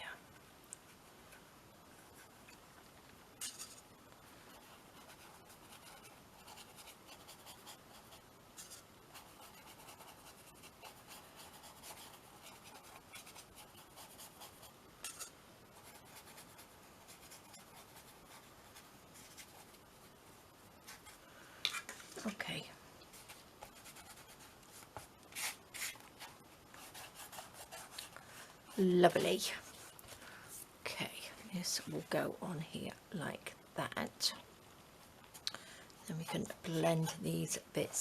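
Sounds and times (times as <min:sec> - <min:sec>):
scratching strokes on canvas: 0:23.1 - 0:30.1.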